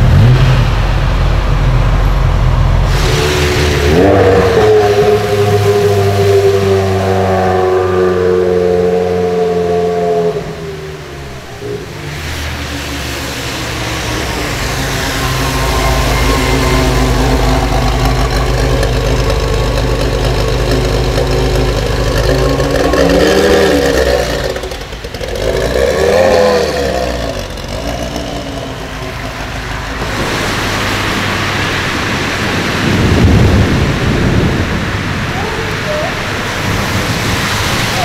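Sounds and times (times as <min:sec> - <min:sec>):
car engine revving: 0:00.0 - 0:38.0
passing engine: 0:00.0 - 0:38.0
rain on road: 0:00.0 - 0:38.0
wet tyres hissing: 0:00.2 - 0:38.0.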